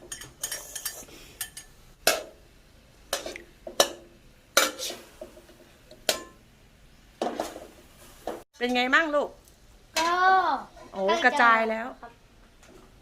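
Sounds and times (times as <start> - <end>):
utensils clinking against cookware: 0.0 - 2.2.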